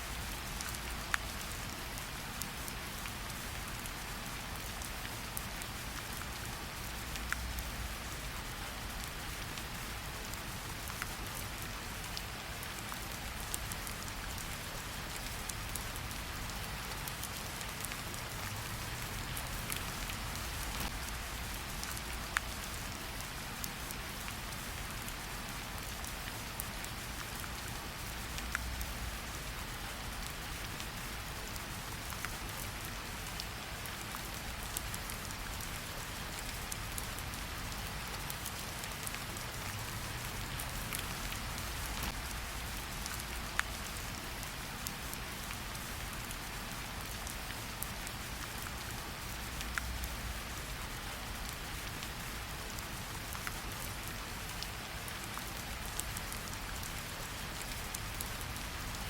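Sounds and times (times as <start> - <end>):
sharp ticks of raindrops: 0.0 - 59.0
rain hissing: 36.2 - 44.6.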